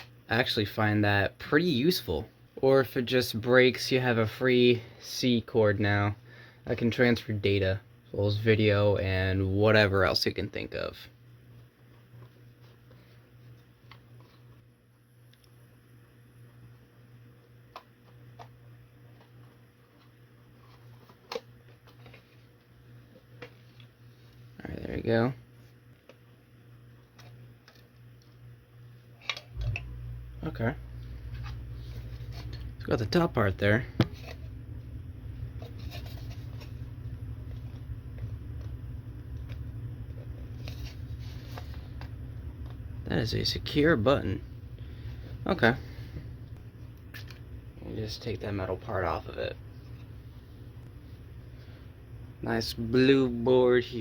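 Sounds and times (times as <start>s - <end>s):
low steady hum: 0.0s - 54.0s.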